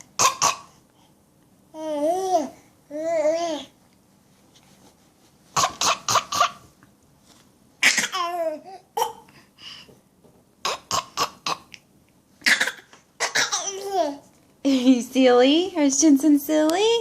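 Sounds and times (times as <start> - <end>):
child fake coughing: 0.2 - 0.7, 5.6 - 6.6, 7.8 - 9.3, 10.6 - 11.7, 12.4 - 14.2.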